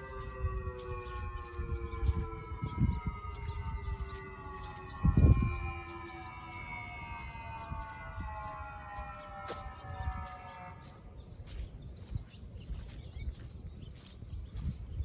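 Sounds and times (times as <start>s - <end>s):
outdoor warning siren: 0.0s - 14.1s.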